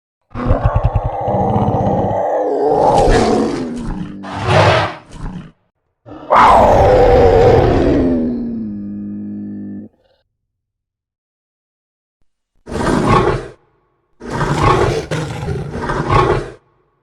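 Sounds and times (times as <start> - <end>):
rasping creature roar: 0.3 - 10.0, 14.2 - 16.7.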